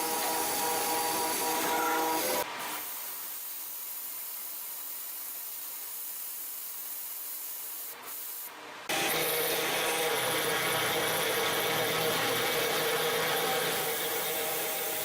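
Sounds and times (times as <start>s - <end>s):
engraving machine grinding stone: 0.0s - 2.4s, 8.9s - 15.0s.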